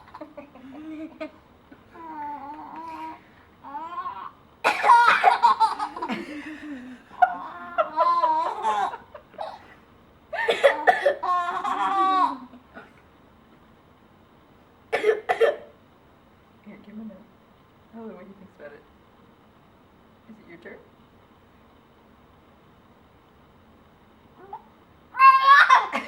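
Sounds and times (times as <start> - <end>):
coughs: 4.6 - 6.3, 9.4 - 9.8, 10.4 - 11.2, 14.9 - 15.7
baby laughing and squealing: 25.2 - 26.0.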